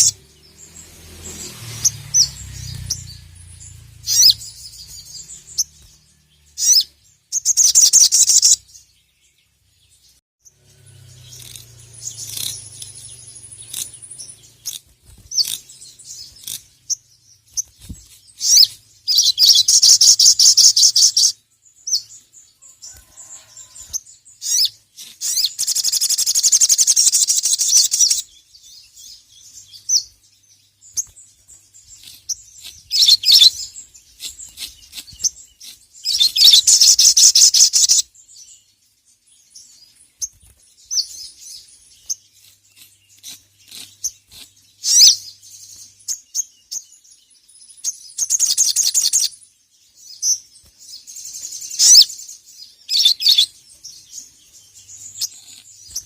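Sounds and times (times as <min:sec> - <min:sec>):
bird chirps and sharp calls: 0:00.0 - 0:56.0
bird chattering trills: 0:02.1 - 0:05.8, 0:11.1 - 0:17.7, 0:31.9 - 0:38.1.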